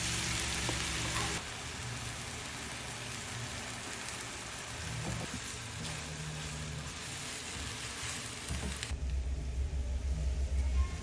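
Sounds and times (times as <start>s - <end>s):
noodles sizzling in a pan: 0.0s - 9.0s
low steady hum: 8.9s - 11.0s.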